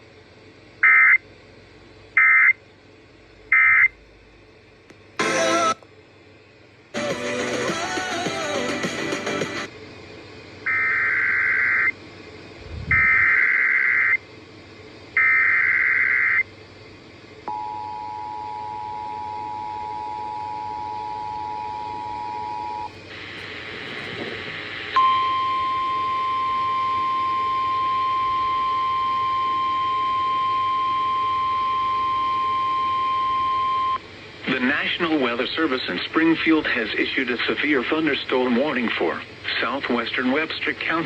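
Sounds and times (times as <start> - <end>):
steady warning alarm tone: 0.8 - 1.2, 2.2 - 2.6, 3.5 - 4.0, 10.6 - 12.0, 12.9 - 14.2, 15.2 - 16.5, 17.5 - 23.0, 25.0 - 34.0
radio static: 10.7 - 11.9, 12.9 - 14.2, 22.8 - 25.0, 34.4 - 41.0
warbling digital header data: 12.9 - 14.2.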